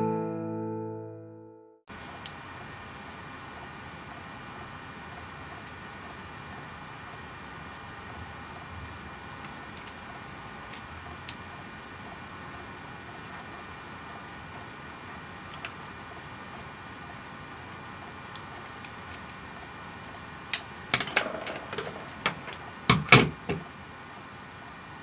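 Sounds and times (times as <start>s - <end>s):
faint fast ticking: 2.1s - 20.5s
sharp clicks and knocks: 20.6s - 23.7s.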